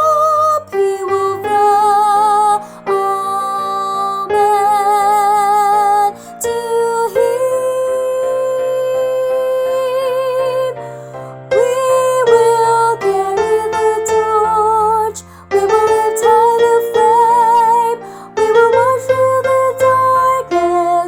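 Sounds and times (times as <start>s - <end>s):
piano accompaniment: 0.0s - 21.0s
woman singing: 0.0s - 21.0s.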